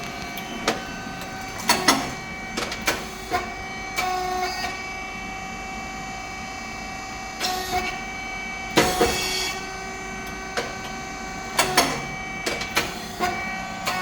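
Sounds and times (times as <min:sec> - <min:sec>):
machine hum and whine: 0:00.0 - 0:14.0
sharp clicks and knocks: 0:11.6 - 0:14.0.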